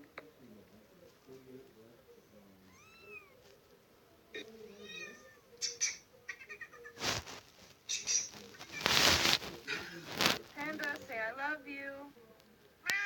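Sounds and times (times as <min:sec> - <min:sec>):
cat meowing: 0:02.6 - 0:03.4, 0:04.7 - 0:05.5, 0:06.3 - 0:07.0.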